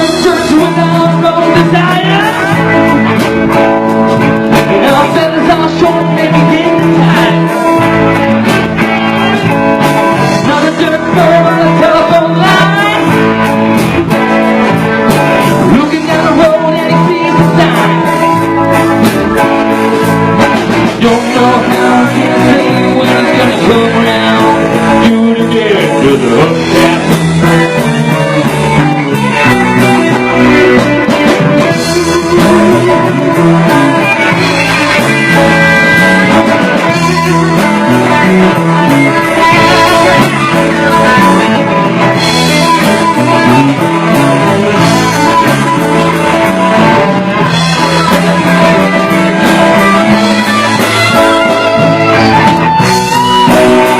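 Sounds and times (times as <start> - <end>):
live band playing rock song: 0.0 - 53.9.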